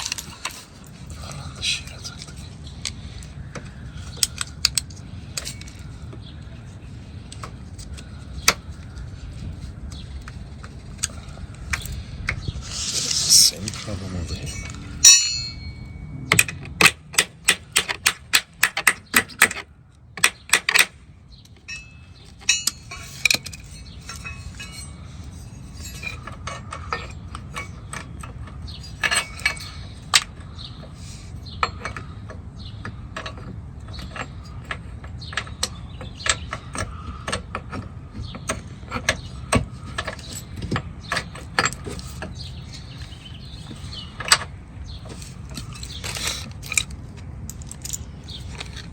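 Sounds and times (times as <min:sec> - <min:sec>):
hand tool clicks and knocks: 0:14.6 - 0:24.9, 0:25.8 - 0:48.9.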